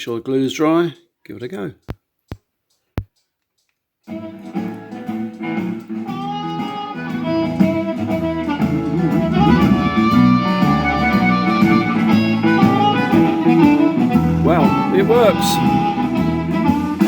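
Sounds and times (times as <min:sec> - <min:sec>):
guitar music through a speaker: 0:04.1 - 0:17.0.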